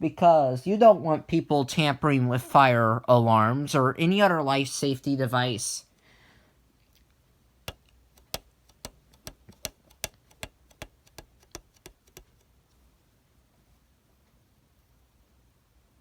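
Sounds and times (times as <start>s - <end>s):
rapid sharp clicks: 7.7s - 12.5s.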